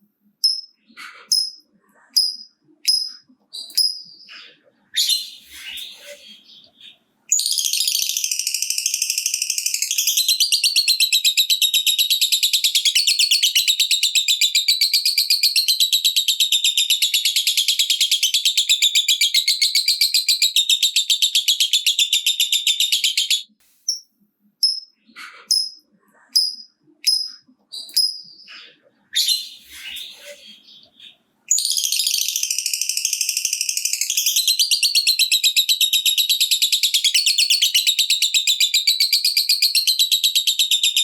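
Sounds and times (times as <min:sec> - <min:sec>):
short bird chirps: 0:00.4 - 0:08.0, 0:23.2 - 0:32.2
bird chattering trill: 0:00.4 - 0:24.0, 0:24.6 - 0:41.0.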